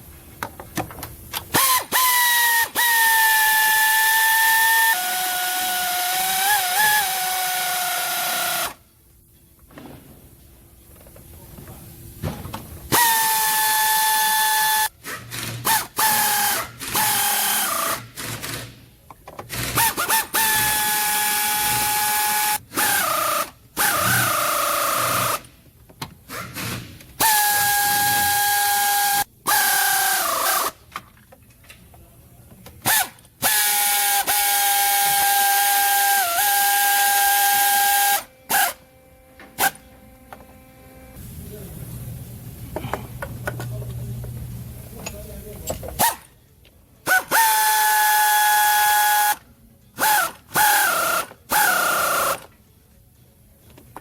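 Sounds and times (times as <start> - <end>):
power tool whining: 19.5 - 25.4, 26.4 - 30.8, 32.9 - 41.2.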